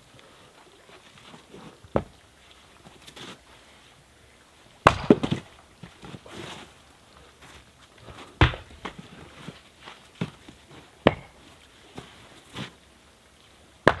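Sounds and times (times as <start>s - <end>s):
maul splitting firewood: 1.3s - 2.2s, 4.8s - 12.9s, 13.8s - 14.0s.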